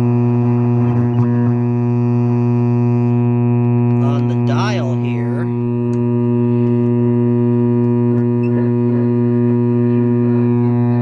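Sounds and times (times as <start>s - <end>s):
loud radio speaker hum: 0.0s - 11.0s.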